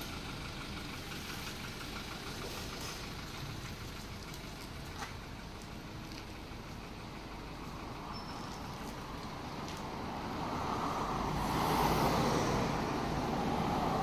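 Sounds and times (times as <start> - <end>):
diesel engine idling: 0.0 - 14.0.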